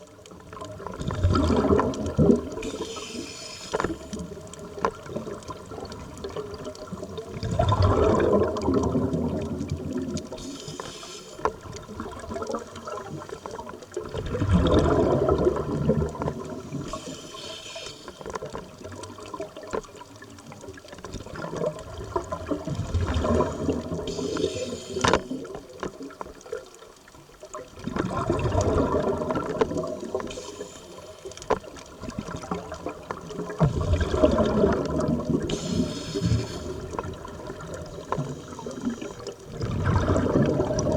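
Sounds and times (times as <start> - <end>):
exhaled bubbles underwater: 0.0 - 40.9
regulator hissing: 2.6 - 4.1.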